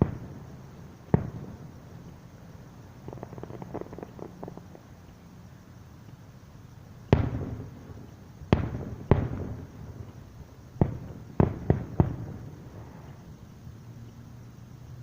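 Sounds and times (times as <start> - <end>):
firework booms with rumble: 7.1 - 10.0, 10.8 - 12.6.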